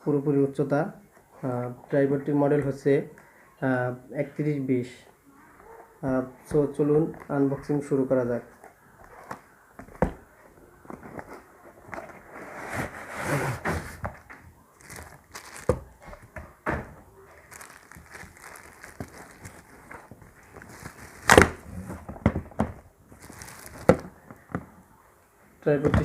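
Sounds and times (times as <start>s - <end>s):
box and wrapping rustling: 8.4s - 24.6s.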